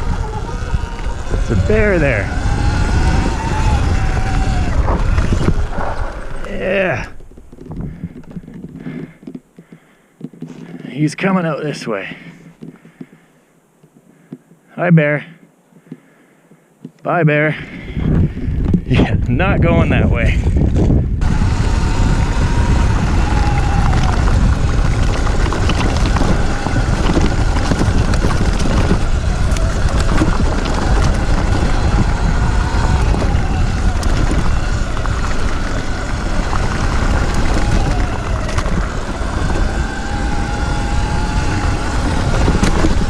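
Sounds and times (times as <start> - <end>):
electric motor whining: 0.0 - 9.4, 20.6 - 43.0
wind rumbling on microphone: 0.0 - 9.4, 17.6 - 43.0.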